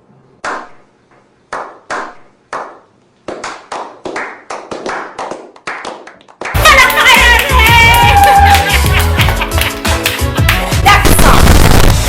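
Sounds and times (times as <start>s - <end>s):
sharp hand claps: 1.5s - 10.8s.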